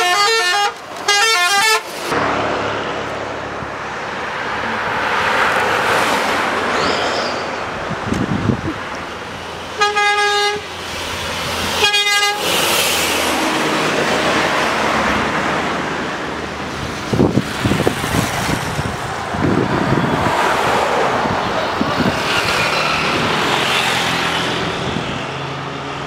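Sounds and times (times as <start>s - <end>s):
bus horn blasts: 0.0s - 1.9s, 9.8s - 10.8s, 11.8s - 12.7s
passing traffic: 0.0s - 26.0s.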